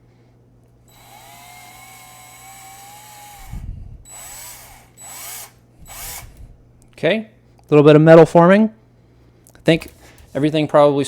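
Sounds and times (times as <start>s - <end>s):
electric drill whining: 0.9s - 6.6s.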